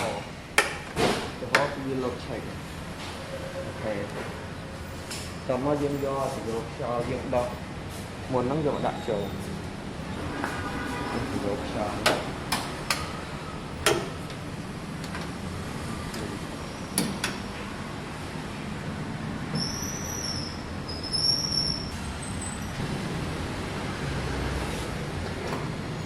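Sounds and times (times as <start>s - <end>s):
sharp clicks and knocks: 12.0s - 13.2s, 13.8s - 14.4s.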